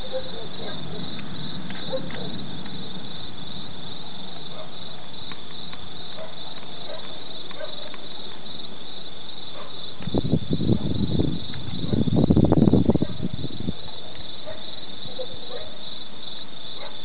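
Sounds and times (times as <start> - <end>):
thunder rumbling: 0.0 - 6.0, 10.0 - 14.0
steady storm noise: 0.0 - 15.2.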